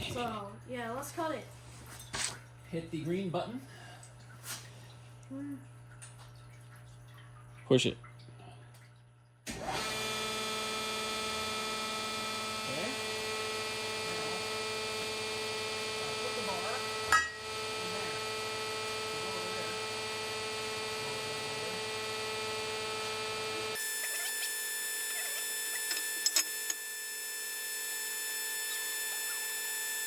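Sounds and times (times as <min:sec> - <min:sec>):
bandsaw cutting steel: 0:23.7 - 0:30.0.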